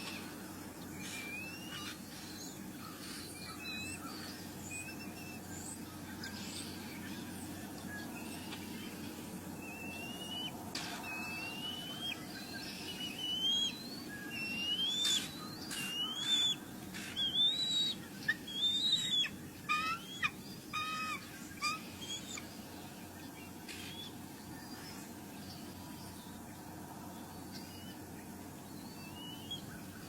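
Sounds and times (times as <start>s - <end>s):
bird whistling calls: 0.9s - 5.8s, 9.6s - 22.5s, 28.8s - 30.0s.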